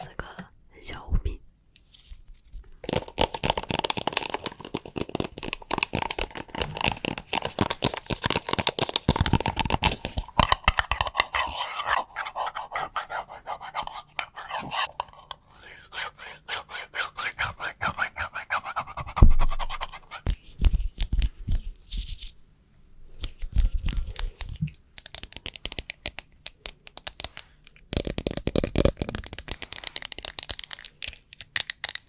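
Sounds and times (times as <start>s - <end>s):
tapping and scratching on plastic: 2.8s - 11.8s, 23.5s - 32.0s.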